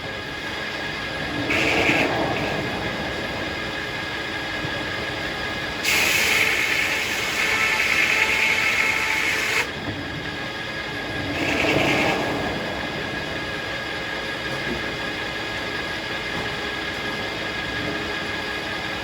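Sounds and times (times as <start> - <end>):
sawmill blade whining: 0.0 - 9.8, 10.9 - 12.4
saw cutting into log: 5.9 - 9.7.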